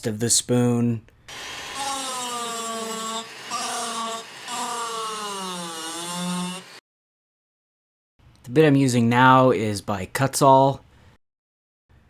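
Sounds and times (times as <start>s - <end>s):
burr rasping into wood: 1.3s - 6.8s
rotary tool motor whine: 1.3s - 6.8s.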